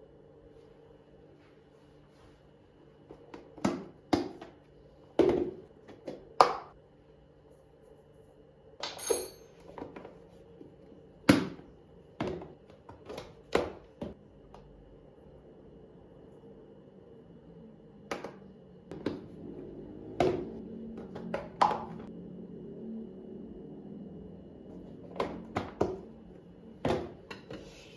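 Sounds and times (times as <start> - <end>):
kitchenware clinking and knocking: 8.8 - 9.6
kitchenware clatter: 8.8 - 9.8.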